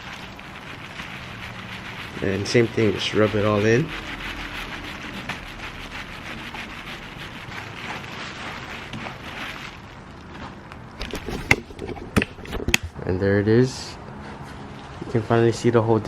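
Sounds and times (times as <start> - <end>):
cloth rubbing on plastic: 0.0 - 13.0.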